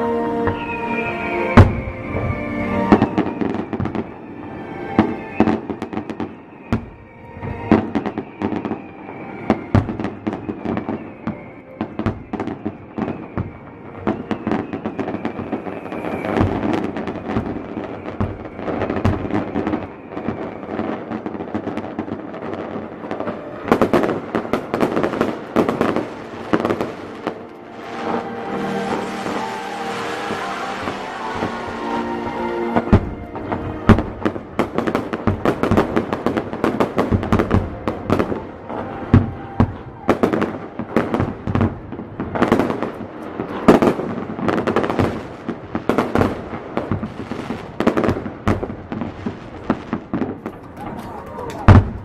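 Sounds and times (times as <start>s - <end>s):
music playing: 0.0s - 14.4s, 22.7s - 41.2s
fireworks bangs and cracks: 0.0s - 52.0s
fireworks crackling: 0.0s - 52.0s.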